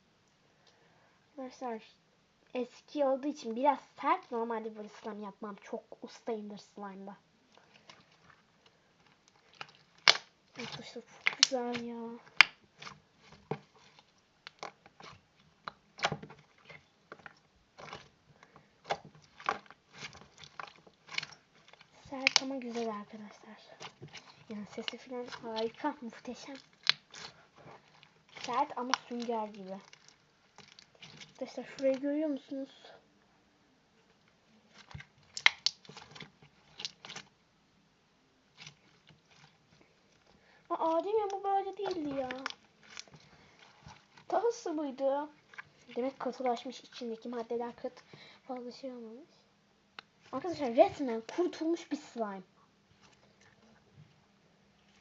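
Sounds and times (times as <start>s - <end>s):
slime squeezed popping: 9.4s - 18.0s, 18.8s - 32.0s, 34.7s - 37.3s, 40.9s - 44.3s.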